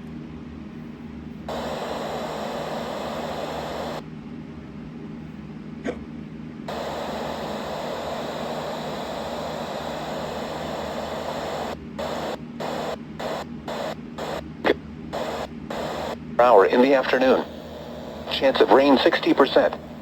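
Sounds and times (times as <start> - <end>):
radio static hiss: 1.5 - 4.0, 6.7 - 20.0.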